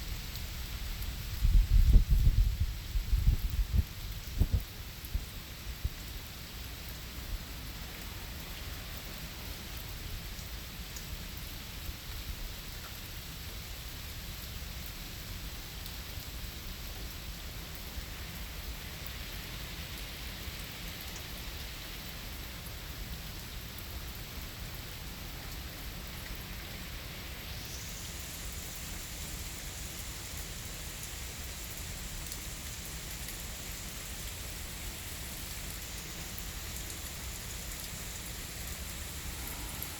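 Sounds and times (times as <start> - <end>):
faint high-pitched hiss: 0.0 - 39.9
steady rain falling: 0.0 - 39.9.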